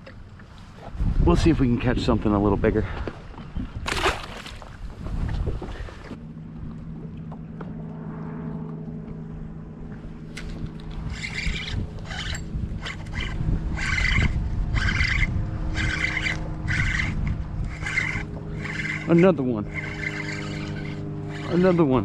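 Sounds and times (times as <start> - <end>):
electric motor humming: 7.5 - 22.0.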